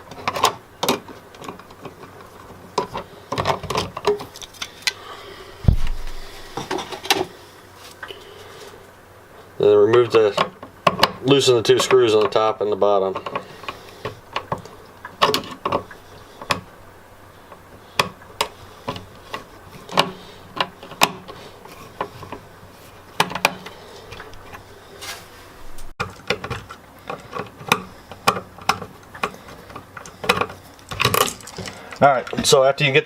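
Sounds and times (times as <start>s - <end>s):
outlet scraping: 23.7s - 25.9s.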